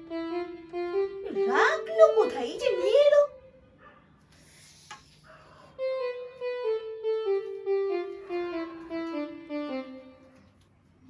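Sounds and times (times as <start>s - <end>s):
descending musical notes: 5.8s - 10.4s.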